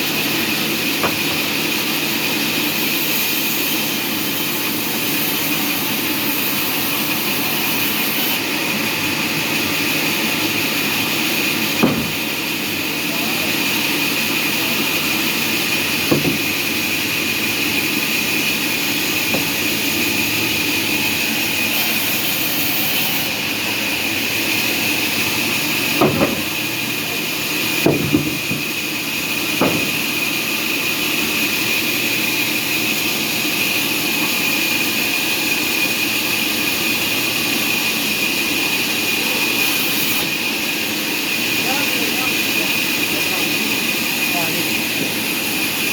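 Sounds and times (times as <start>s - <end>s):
sawmill machinery whining: 0.0s - 45.9s
short knocks: 11.8s - 12.2s, 16.1s - 16.6s, 26.0s - 26.5s, 29.6s - 30.0s.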